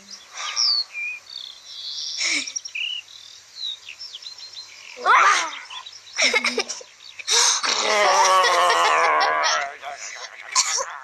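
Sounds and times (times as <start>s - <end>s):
birds chirping: 0.0s - 11.0s.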